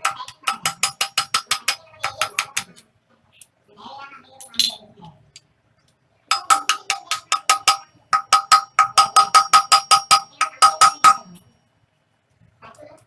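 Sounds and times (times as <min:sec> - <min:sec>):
hammer blows on metal: 0:06.3 - 0:11.4.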